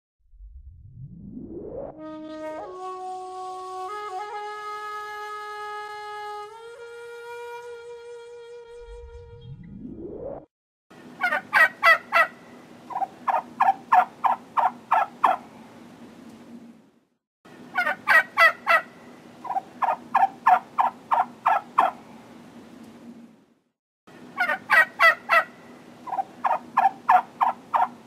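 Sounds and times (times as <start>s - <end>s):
low background hum: 11.0s - 28.0s
turkey gobbling: 11.2s - 15.4s, 17.7s - 22.0s, 24.4s - 28.0s.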